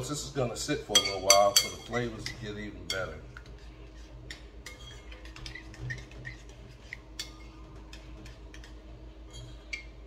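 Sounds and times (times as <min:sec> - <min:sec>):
spoon clinking against dish: 0:00.9 - 0:03.5.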